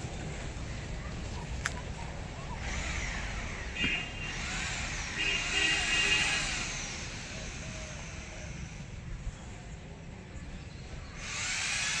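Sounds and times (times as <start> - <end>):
power drill driving screws into metal: 11.2 - 12.0.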